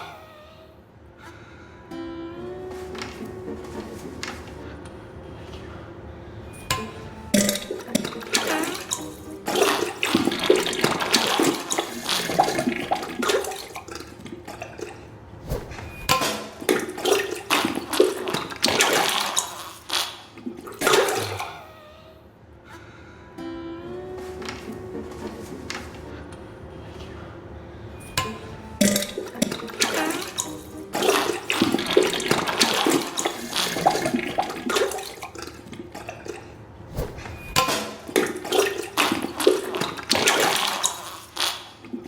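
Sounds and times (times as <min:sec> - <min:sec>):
wet sputtering splatters: 0:07.4 - 0:15.0, 0:15.6 - 0:21.5, 0:28.8 - 0:36.4, 0:37.0 - 0:42.0.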